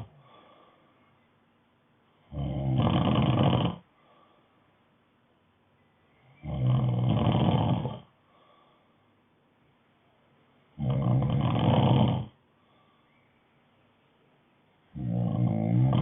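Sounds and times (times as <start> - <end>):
loud snores: 0.0 - 0.3, 2.3 - 3.9, 6.4 - 8.1, 10.8 - 12.4, 15.0 - 16.0.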